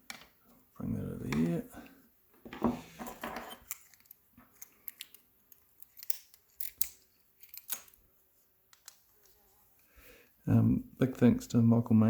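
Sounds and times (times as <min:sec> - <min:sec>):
lock and metal tools clicking: 0:03.4 - 0:08.0.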